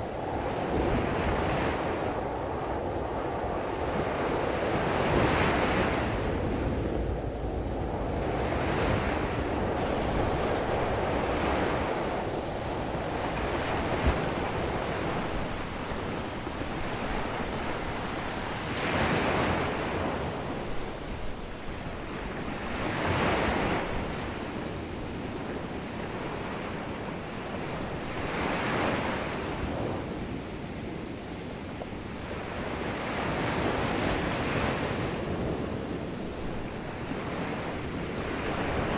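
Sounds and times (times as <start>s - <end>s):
waves breaking on beach: 0.0s - 38.9s
steady wash of water: 4.6s - 22.0s.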